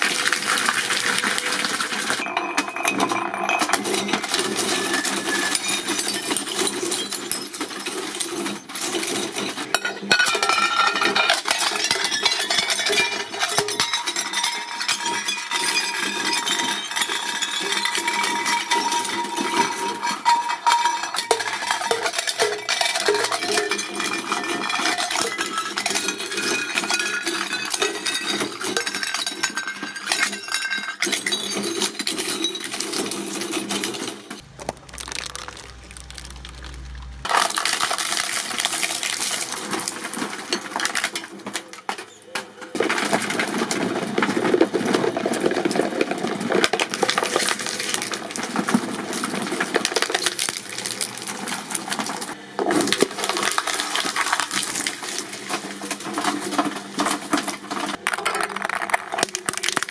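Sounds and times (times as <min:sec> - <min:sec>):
objects crushed in hydraulic press: 0:00.0 - 0:29.5, 0:31.2 - 0:59.9
low hum: 0:34.4 - 0:37.3.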